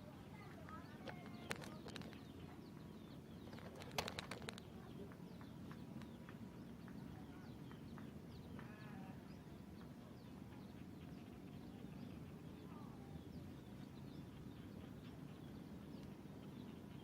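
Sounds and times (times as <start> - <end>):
faint outdoor ambience: 0.0 - 17.0
run of sharp clicks: 1.0 - 2.4, 3.4 - 7.0
falling bird chirps: 3.4 - 4.6.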